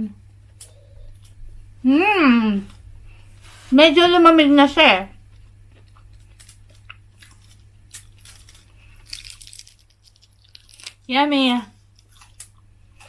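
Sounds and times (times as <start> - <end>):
steady low hum: 0.0 - 13.0
person chewing and crunching: 5.2 - 11.1, 11.8 - 13.0.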